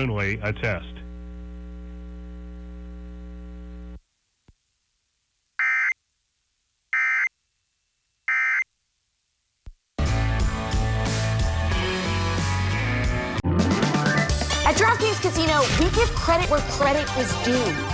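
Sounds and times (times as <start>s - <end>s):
electrical hum: 0.0s - 6.0s.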